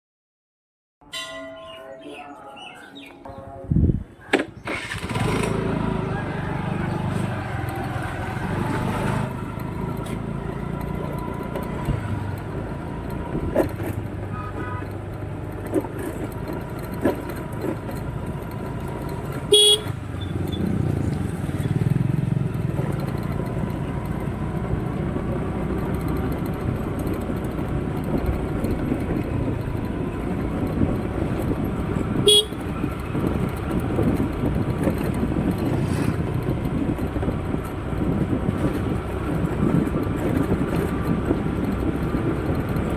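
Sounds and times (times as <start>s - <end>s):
road traffic rumble: 1.1s - 42.9s
car horn toots: 14.2s - 15.0s, 19.4s - 20.6s, 32.2s - 32.9s.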